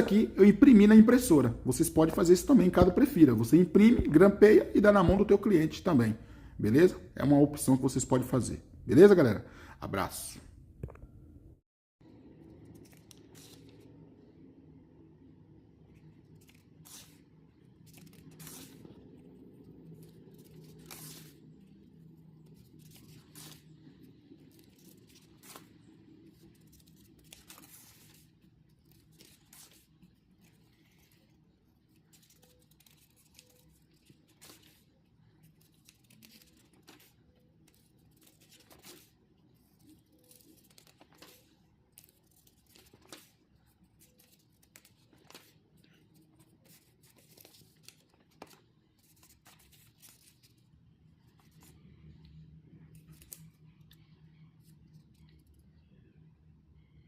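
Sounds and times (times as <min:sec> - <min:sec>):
paper rustling and clicks: 0:12.5 - 0:13.9, 0:16.0 - 0:21.8, 0:22.4 - 0:50.6.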